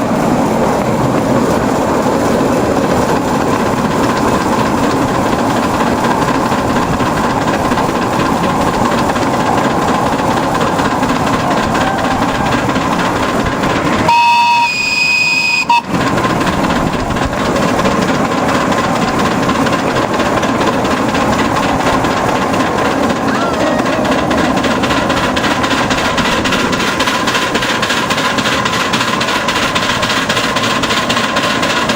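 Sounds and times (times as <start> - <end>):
steam locomotive rumble and hiss: 0.0 - 31.9
steam whistle: 11.4 - 12.7, 14.0 - 16.0.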